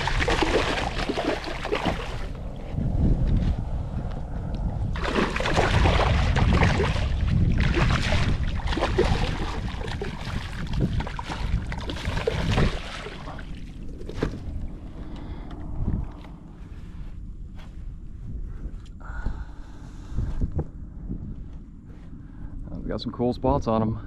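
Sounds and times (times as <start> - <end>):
water splashing: 0.0 - 2.4, 5.0 - 14.6
wind buffeting microphone: 0.0 - 24.0.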